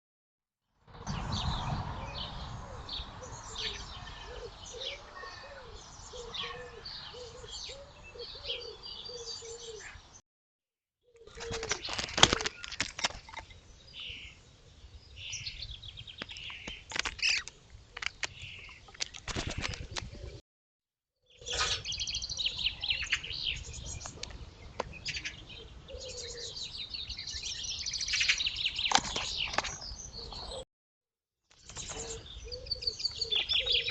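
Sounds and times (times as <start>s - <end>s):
small birds chirping: 1.1s - 10.2s, 11.1s - 20.4s, 21.2s - 30.6s, 31.5s - 33.9s
wings fluttering: 11.2s - 13.5s, 16.2s - 20.4s.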